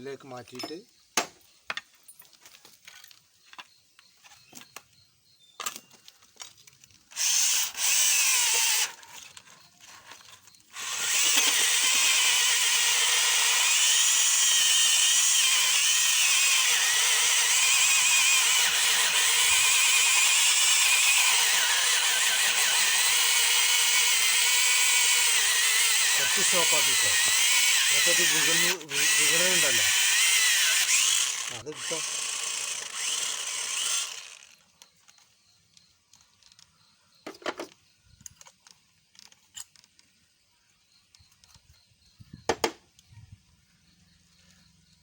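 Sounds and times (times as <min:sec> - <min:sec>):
cordless drill drilling into wood: 0:07.1 - 0:09.3, 0:10.7 - 0:34.6
drill handling clicks: 0:10.4 - 0:35.2.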